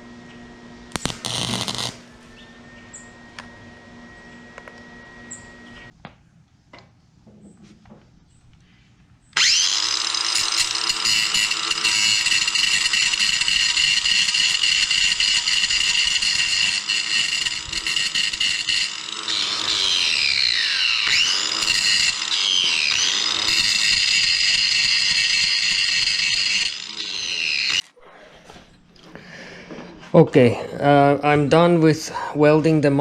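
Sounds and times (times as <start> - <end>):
angle grinder grinding metal: 0.9 - 2.1, 9.4 - 27.9.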